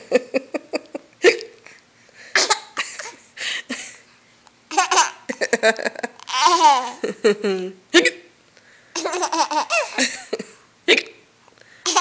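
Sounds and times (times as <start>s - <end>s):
girl laughing: 5.0s - 7.8s, 9.2s - 11.0s.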